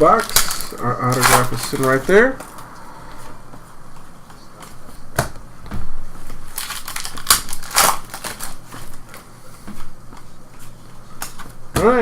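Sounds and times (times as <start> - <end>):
packaging crumpling: 0.0 - 2.2, 6.5 - 9.3.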